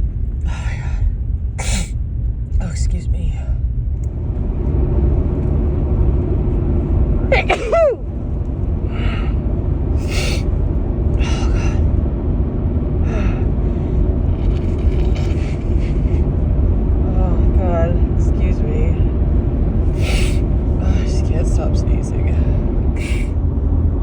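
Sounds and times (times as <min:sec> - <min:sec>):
low rumble of car on road: 0:00.0 - 0:24.0
woman sneezing: 0:07.3 - 0:08.0.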